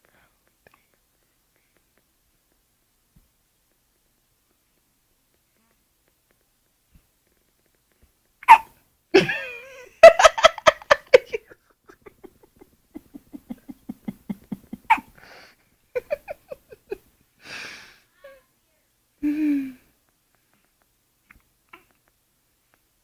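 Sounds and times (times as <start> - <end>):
baby hiccuping: 8.4 - 8.7, 14.9 - 15.1
person laughing: 9.2 - 15.2, 15.9 - 17.1.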